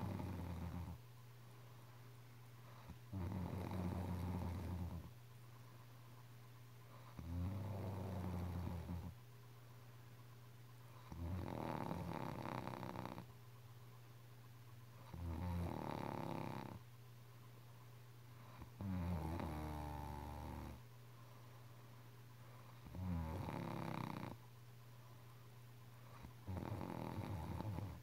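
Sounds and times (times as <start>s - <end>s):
person snoring: 3.1s - 5.0s, 7.2s - 9.1s, 11.1s - 13.2s, 26.5s - 28.0s.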